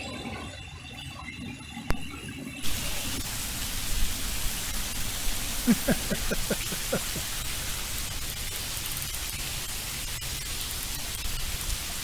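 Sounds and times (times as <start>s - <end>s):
heavy rain pouring: 1.9s - 12.0s.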